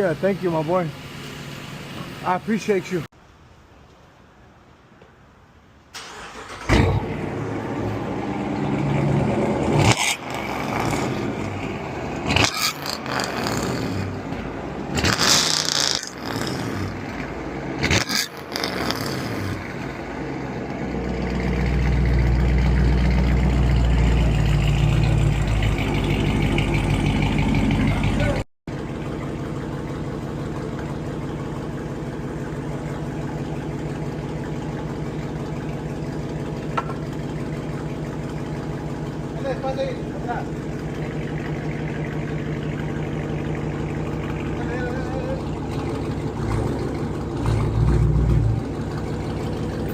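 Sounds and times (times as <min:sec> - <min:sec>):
car engine starting: 0:00.0 - 0:03.1, 0:05.9 - 0:49.9
loud exhaust bursts: 0:06.4 - 0:19.8
deep engine drone: 0:06.7 - 0:49.9.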